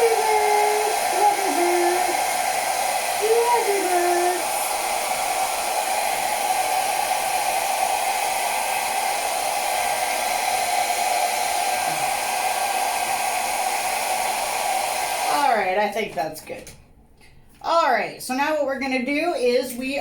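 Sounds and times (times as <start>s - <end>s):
hair dryer running: 0.0s - 15.7s.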